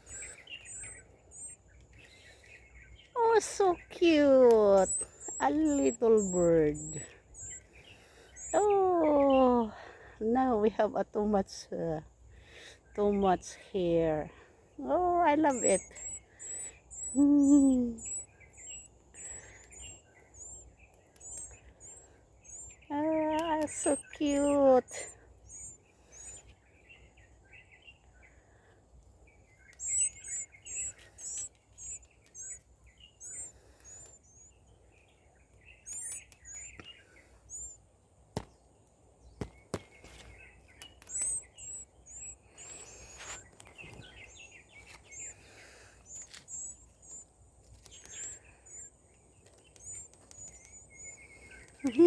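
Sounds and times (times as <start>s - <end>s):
young birds cheeping: 0.0s - 52.0s
sharp taps: 38.3s - 38.6s, 39.4s - 41.4s.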